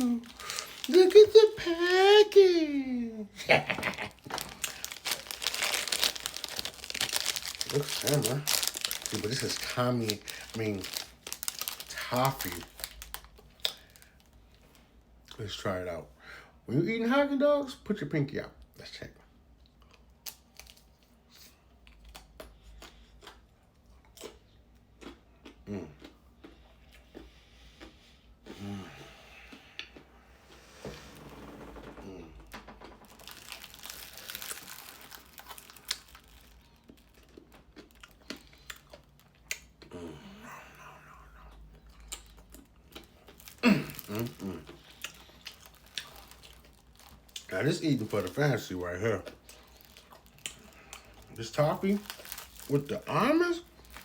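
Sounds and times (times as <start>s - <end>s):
chewing ice cream bar: 0.0s - 1.5s, 4.2s - 15.4s, 19.6s - 30.2s, 32.8s - 40.1s, 41.4s - 54.0s
short falling vocal sound: 30.6s - 33.0s
crunchy chewing: 41.8s - 48.1s, 52.0s - 53.0s.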